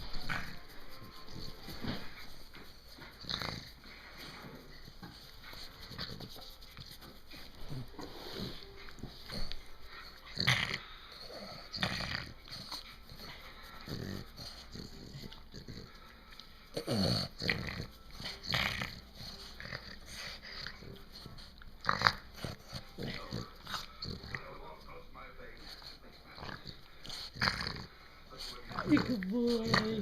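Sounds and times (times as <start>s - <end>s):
dog vocalizing: 7.9s - 24.6s, 25.7s - 30.0s.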